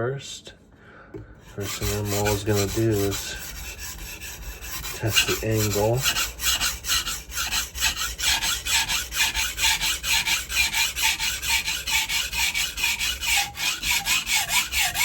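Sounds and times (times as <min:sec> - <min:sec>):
knife rasping on sharpening stone: 0:01.5 - 0:09.9.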